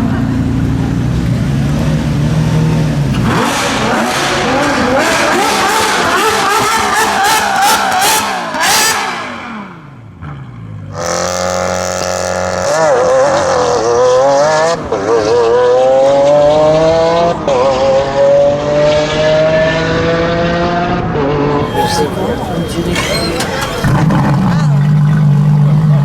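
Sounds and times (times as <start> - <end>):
sports car engine accelerating: 0.0 - 26.0
gear upshifts: 21.6 - 25.2.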